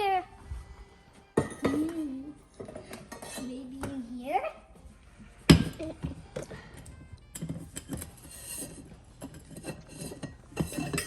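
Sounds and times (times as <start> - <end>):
cups clinking and clattering: 1.4 - 4.0, 5.5 - 11.0.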